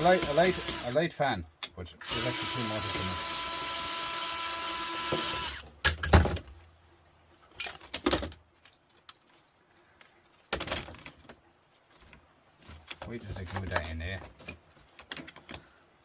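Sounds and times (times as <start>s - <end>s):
power drill whining: 0.0s - 1.0s, 2.0s - 5.6s
knocks and clatter of parts: 5.2s - 6.6s, 7.6s - 9.0s, 10.5s - 11.4s, 12.0s - 15.7s.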